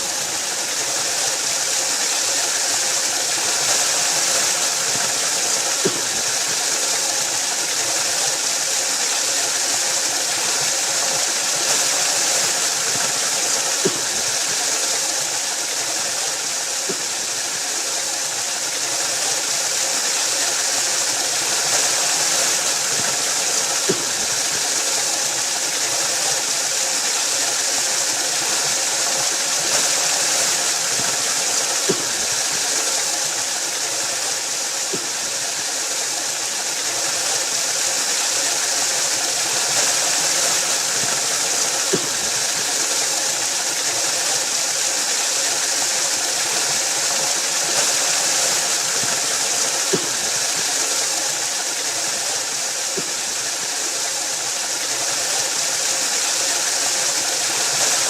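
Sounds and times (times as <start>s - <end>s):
waterfall rushing: 0.0s - 58.0s.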